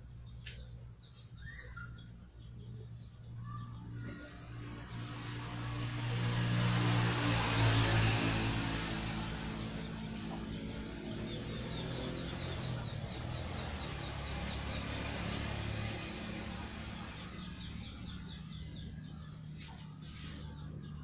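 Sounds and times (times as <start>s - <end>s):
faint bird chirps: 0.0s - 4.6s
engine humming: 0.0s - 21.0s.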